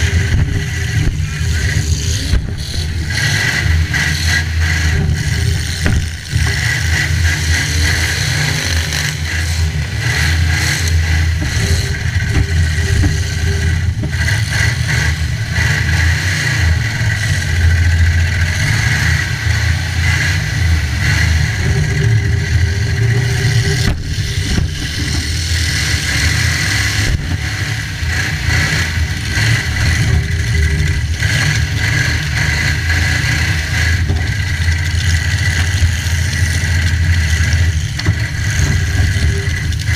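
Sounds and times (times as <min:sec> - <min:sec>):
car engines revving: 0:00.0 - 0:39.9
car impacts knocking: 0:05.8 - 0:06.2.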